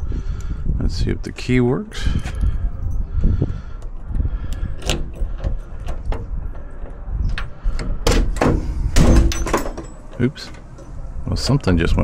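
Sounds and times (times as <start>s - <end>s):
car door latch clicks and clunks: 4.8s - 6.3s, 6.9s - 10.9s.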